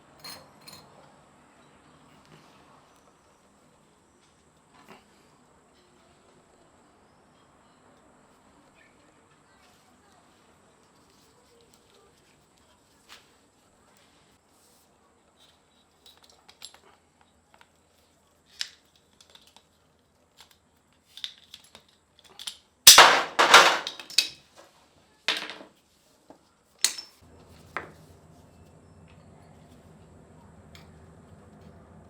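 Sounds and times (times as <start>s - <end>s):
hard objects knocking together: 22.9s - 24.6s, 25.3s - 25.7s.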